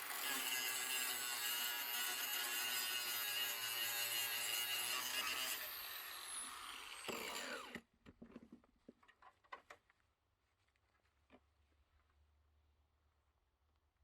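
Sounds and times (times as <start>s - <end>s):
grinder whining and spinning down: 5.2s - 7.8s.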